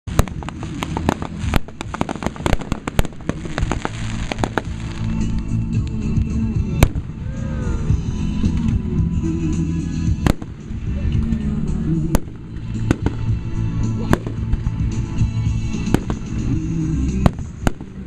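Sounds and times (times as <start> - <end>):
fireworks crackling bangs: 0.0 - 7.2, 10.0 - 11.4, 12.1 - 13.5, 14.1 - 18.0
low rumble: 0.1 - 18.0.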